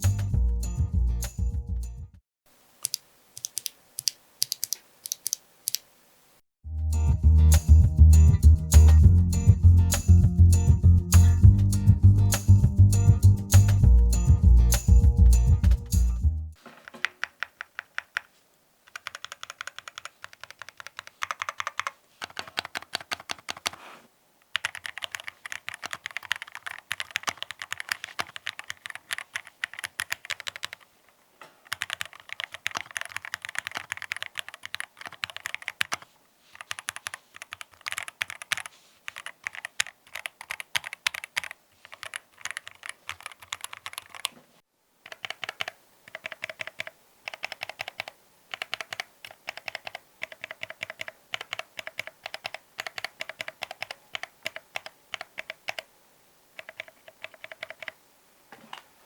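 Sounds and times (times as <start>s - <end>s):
mechanical keyboard typing: 2.8s - 5.8s, 16.8s - 18.3s, 18.9s - 23.8s, 24.5s - 30.9s, 31.6s - 44.3s, 45.0s - 55.9s, 56.6s - 58.0s.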